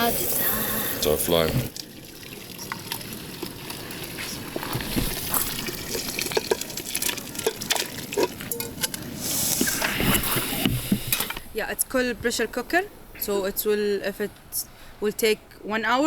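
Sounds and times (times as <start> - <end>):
water sloshing in a pot: 1.3 - 9.0.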